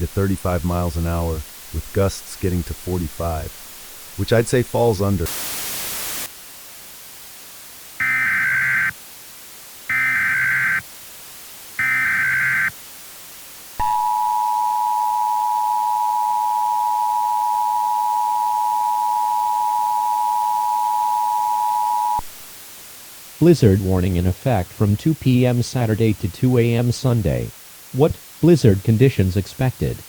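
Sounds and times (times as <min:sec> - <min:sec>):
two-tone attention signal: 0:08.0 - 0:08.9, 0:11.8 - 0:12.7, 0:13.8 - 0:22.2
digital data bursts: 0:09.9 - 0:10.8, 0:11.8 - 0:12.7.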